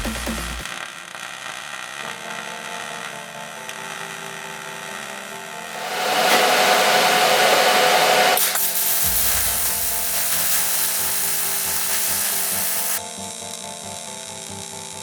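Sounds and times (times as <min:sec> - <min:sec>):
background music with steady beat: 0:00.0 - 0:01.0, 0:08.8 - 0:14.4
harsh metalworking hiss: 0:05.7 - 0:13.0.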